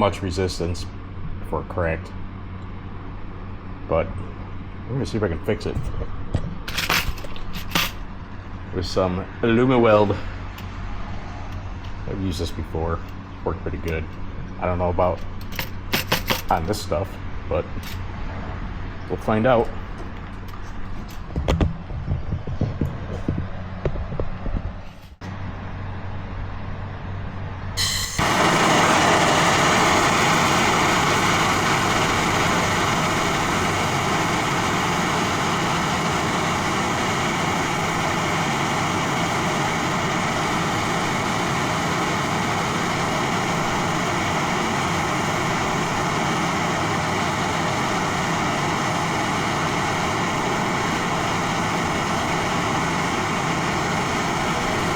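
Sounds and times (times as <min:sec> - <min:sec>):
tools clattering: 0:06.6 - 0:08.0, 0:15.4 - 0:16.5
gas torch hissing: 0:27.8 - 0:54.9.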